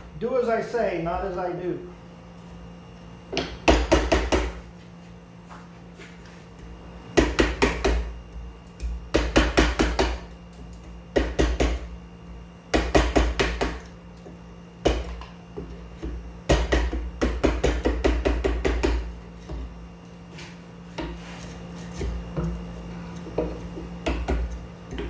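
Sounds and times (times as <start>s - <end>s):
steady low hum: 0.0s - 25.0s
mallet tapping chisel into wood: 3.3s - 4.6s, 16.0s - 19.1s.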